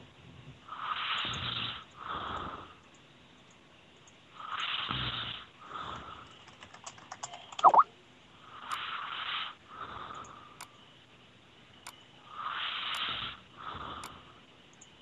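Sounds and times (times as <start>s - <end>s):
quick clicks: 6.3s - 7.9s
person snoring: 12.3s - 14.2s.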